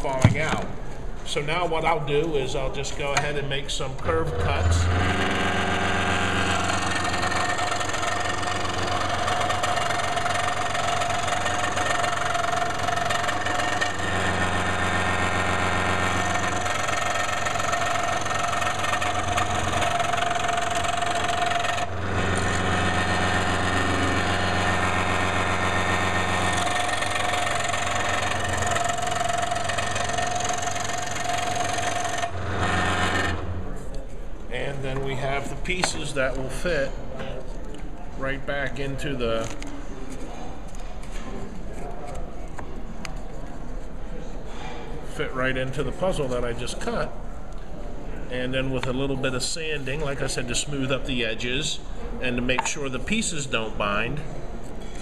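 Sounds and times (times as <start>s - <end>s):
power saw cutting wood: 4.0s - 33.6s.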